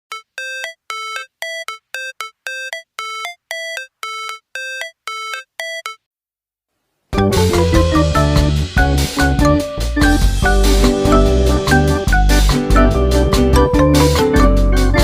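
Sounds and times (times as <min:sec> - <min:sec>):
chiptune jingle beeping notes: 0:00.1 - 0:06.0.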